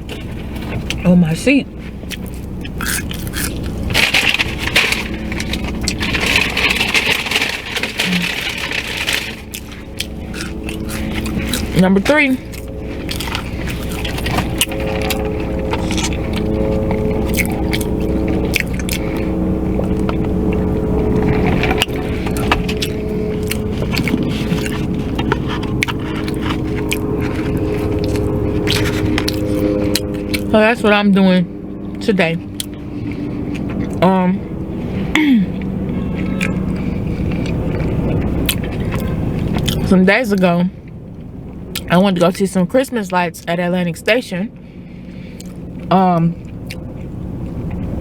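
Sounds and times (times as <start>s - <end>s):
close-up chewing with crunches: 0.0s - 1.1s, 1.8s - 30.6s, 31.9s - 34.0s, 34.9s - 42.3s, 45.0s - 48.0s
steady low hum: 0.0s - 48.0s
paper packaging crinkling: 2.2s - 11.8s, 12.4s - 19.2s, 21.2s - 30.5s.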